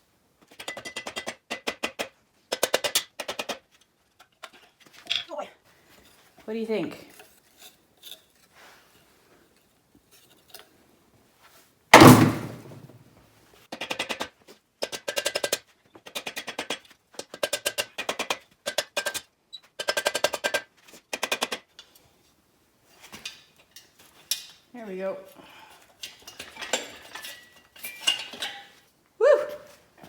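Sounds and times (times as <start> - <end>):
loud metallic knock: 12.0 - 12.9.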